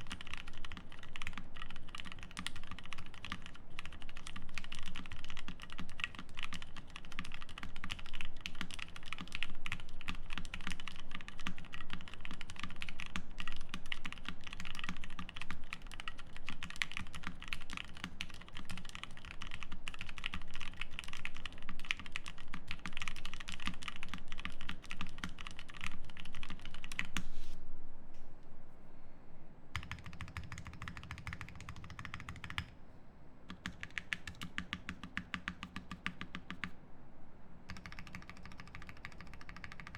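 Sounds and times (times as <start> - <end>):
mechanical keyboard typing: 0.0 - 27.3, 29.8 - 32.7, 33.5 - 36.7, 37.7 - 39.9.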